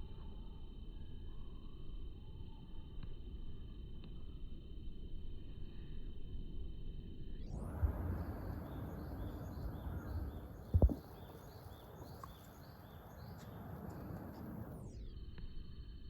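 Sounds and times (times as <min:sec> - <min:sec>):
outdoor noise: 0:00.0 - 0:16.0
low thump: 0:10.7 - 0:11.2.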